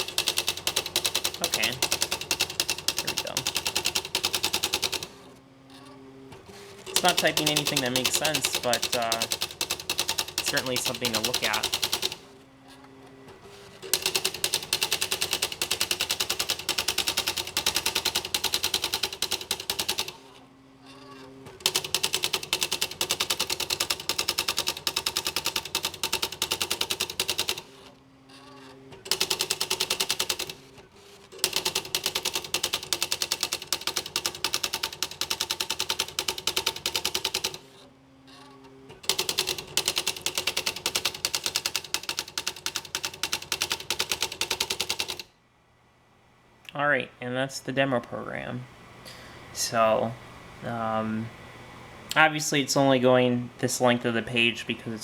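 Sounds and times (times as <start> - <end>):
electric typewriter key strikes: 0.0 - 5.1, 6.9 - 12.2, 13.9 - 20.1, 21.6 - 27.7, 29.1 - 30.6, 31.4 - 37.6, 39.1 - 45.2
typewriter motor hum: 0.0 - 45.3.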